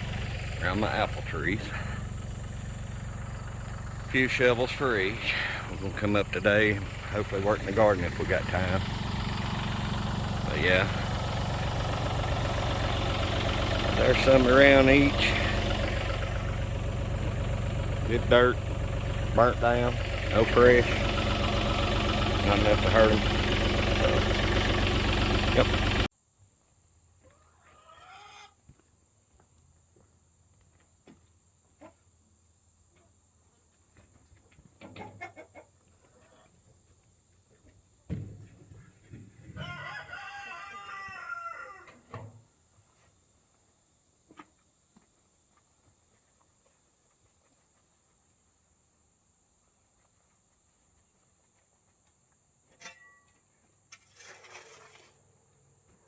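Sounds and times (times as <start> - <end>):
chickens clucking: 0.0 - 26.1
rooster crowing: 39.6 - 42.0.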